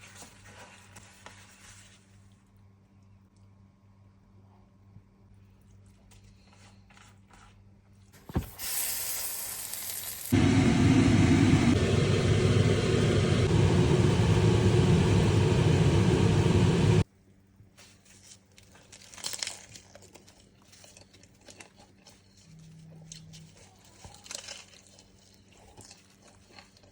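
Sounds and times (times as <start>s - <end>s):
faint crinkling and crunching: 0.0s - 3.5s, 5.3s - 8.1s, 17.7s - 26.9s
food sizzling in a pan: 8.3s - 11.3s.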